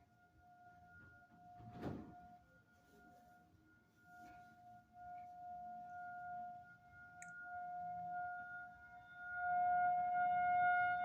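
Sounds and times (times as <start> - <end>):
distant tornado siren tone: 0.0 - 11.0.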